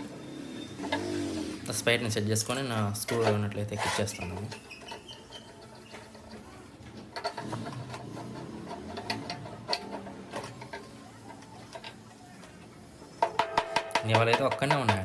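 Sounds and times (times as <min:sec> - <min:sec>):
screwdriver whirring: 0:03.1 - 0:12.2.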